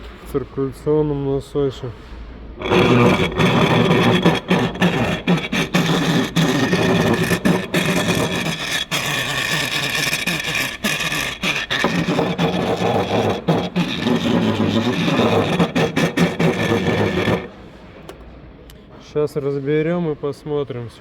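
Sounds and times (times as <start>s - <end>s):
rustling scraping noise: 1.9s - 18.2s.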